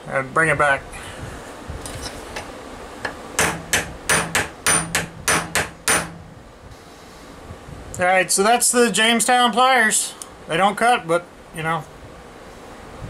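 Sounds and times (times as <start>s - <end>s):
hammer striking metal: 3.4s - 6.2s.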